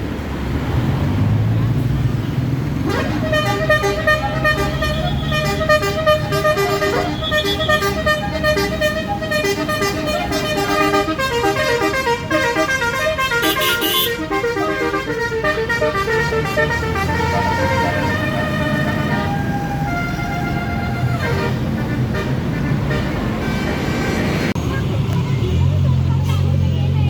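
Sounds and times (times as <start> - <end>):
bus engine rumble: 0.0 - 27.0
musical air horn tune: 2.8 - 23.8.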